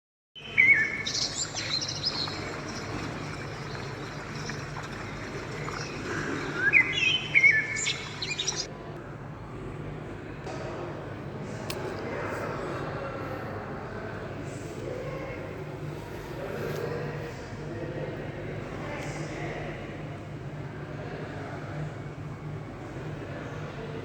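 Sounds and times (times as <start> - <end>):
bird chirps: 0.4 - 8.7
steady low hum: 0.4 - 8.7.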